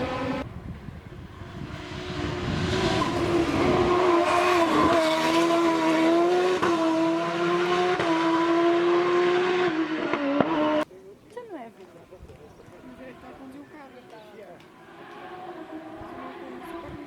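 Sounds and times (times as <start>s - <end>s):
race car engine at high revs: 0.0s - 0.5s, 1.1s - 10.8s, 14.9s - 17.0s.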